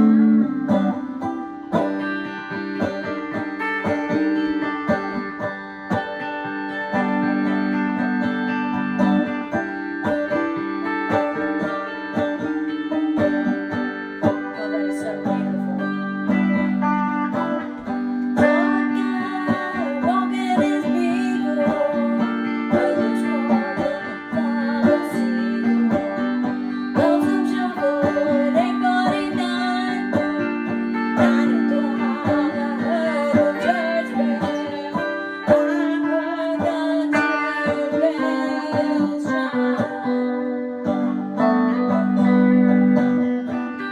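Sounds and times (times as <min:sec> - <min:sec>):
electric guitar: 0:00.0 - 0:43.9
electrified banjo: 0:00.0 - 0:43.9.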